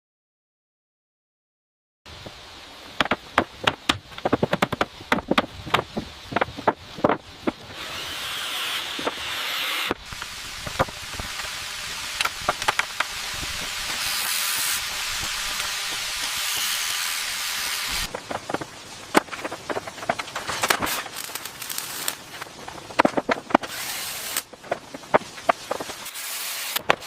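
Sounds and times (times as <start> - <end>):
sharp knocks and clatters: 3.0 - 7.6, 22.7 - 23.7
spraying hiss: 9.4 - 19.0, 25.7 - 27.0.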